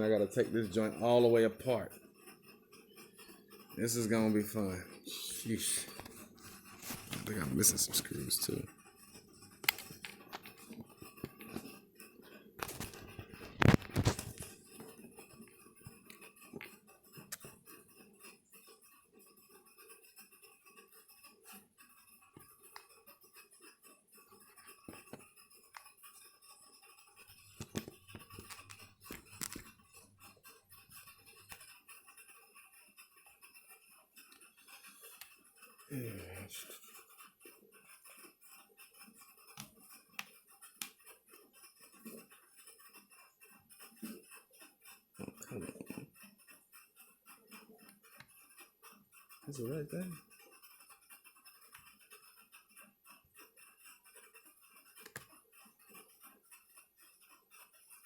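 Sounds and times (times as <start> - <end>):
screwdriver clicks and taps on laptop: 9.6 - 11.7, 12.6 - 14.5, 27.5 - 29.8, 39.5 - 41.1, 55.0 - 55.4.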